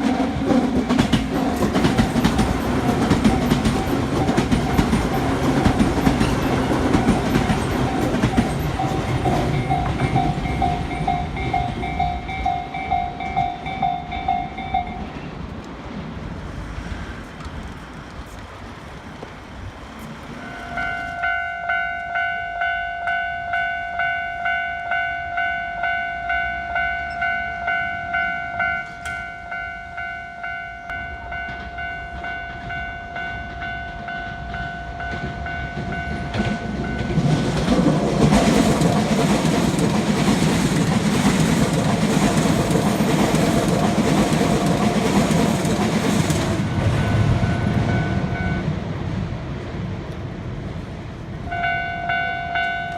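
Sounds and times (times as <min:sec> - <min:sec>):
train wheels rumbling: 0:00.0 - 0:52.9
railroad crossing bell ringing: 0:01.9 - 0:15.3, 0:20.3 - 0:37.4, 0:46.4 - 0:48.8, 0:51.4 - 0:52.9.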